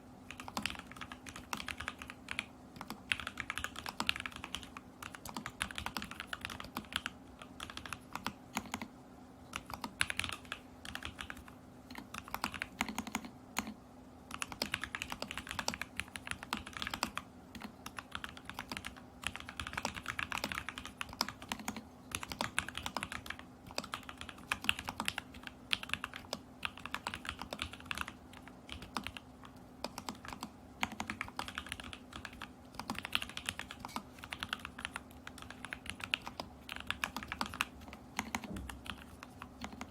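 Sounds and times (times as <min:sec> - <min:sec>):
faint steady hum: 0:00.0 - 0:39.9
mechanical keyboard typing: 0:00.2 - 0:08.9, 0:09.5 - 0:39.9.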